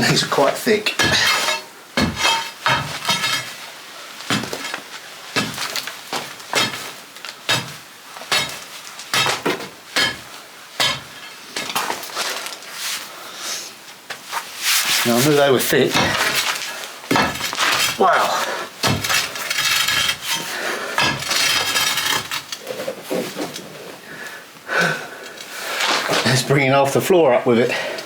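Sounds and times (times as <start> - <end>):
pry bar clanking on stone: 1.0 - 3.5, 7.5 - 11.7, 17.1 - 18.0, 18.8 - 22.6.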